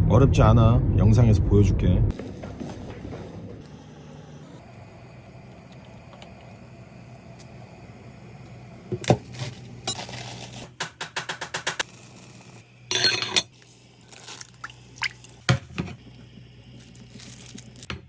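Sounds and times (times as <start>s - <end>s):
cookware and utensils clattering: 12.9s - 13.6s.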